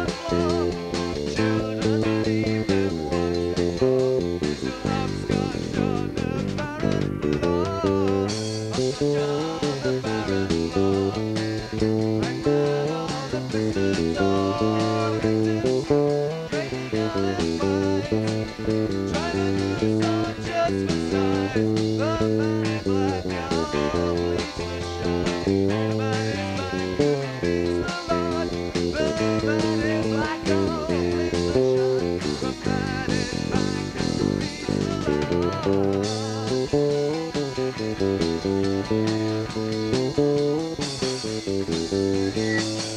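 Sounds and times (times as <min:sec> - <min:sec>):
bass guitar: 0:00.0 - 0:42.9
electric guitar: 0:00.0 - 0:42.9.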